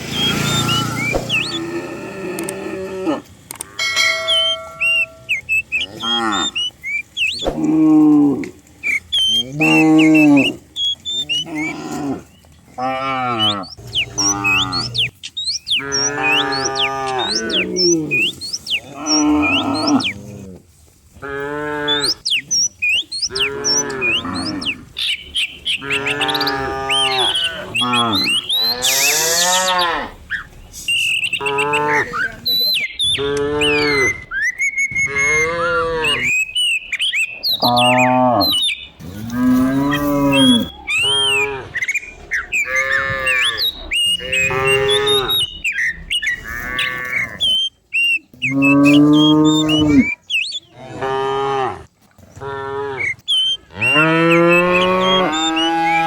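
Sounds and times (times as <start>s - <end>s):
cattle mooing: 0.2s - 5.1s, 5.7s - 6.7s, 9.2s - 15.1s, 15.7s - 20.6s, 21.2s - 22.2s, 23.3s - 24.9s, 25.8s - 30.2s, 31.4s - 32.4s, 33.2s - 34.2s, 35.0s - 36.4s, 37.6s - 41.8s, 42.6s - 45.6s, 46.4s - 47.5s, 48.4s - 50.2s, 50.8s - 56.0s.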